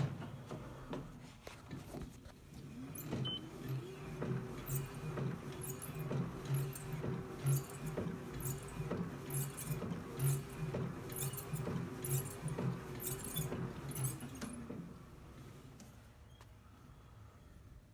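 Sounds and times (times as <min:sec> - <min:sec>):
metallic clinking rattle: 0:04.6 - 0:05.0, 0:05.6 - 0:14.6.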